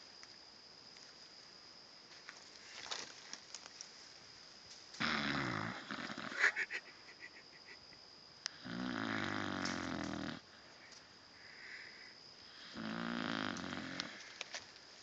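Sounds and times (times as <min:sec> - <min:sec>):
dog snoring: 0:05.0 - 0:06.4, 0:08.5 - 0:10.5, 0:12.5 - 0:14.2.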